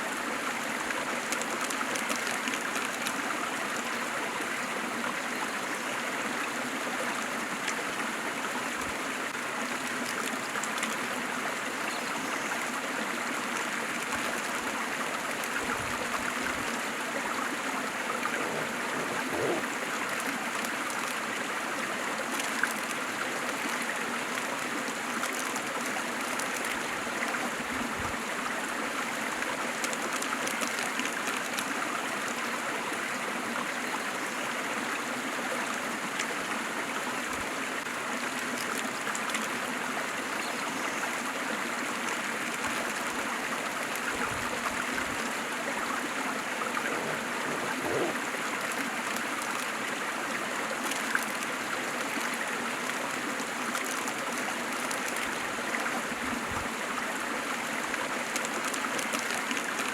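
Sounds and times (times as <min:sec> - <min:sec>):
water splashes and trickles: 0:00.0 - 0:59.9
waterfall rushing: 0:17.6 - 0:20.0, 0:45.2 - 0:49.9.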